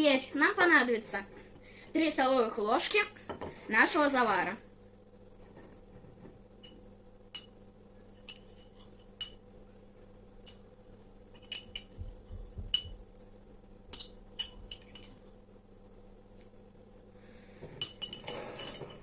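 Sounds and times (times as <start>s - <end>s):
metal spoon clinking against glass: 7.4s - 7.6s, 8.2s - 9.4s, 11.4s - 11.9s, 13.9s - 15.2s, 17.8s - 19.0s.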